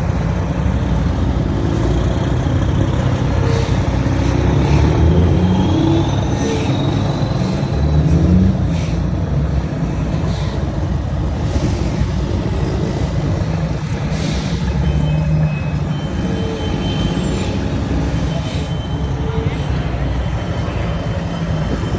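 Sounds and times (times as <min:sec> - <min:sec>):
diesel truck engine rumbling: 0:00.0 - 0:21.9.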